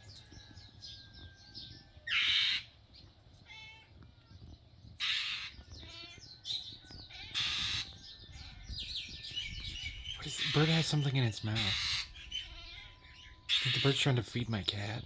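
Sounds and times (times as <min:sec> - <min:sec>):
rattling bird calls: 0:02.0 - 0:03.9, 0:05.0 - 0:15.0
bird giving harsh rasping calls: 0:02.1 - 0:02.7, 0:05.0 - 0:06.2, 0:07.1 - 0:07.9, 0:09.8 - 0:14.9.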